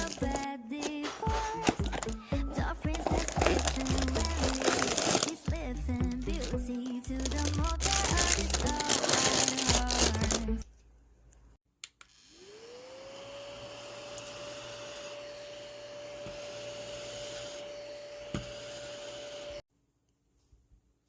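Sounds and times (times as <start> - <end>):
desk vacuum cleaner motor whirring: 12.0 - 19.6.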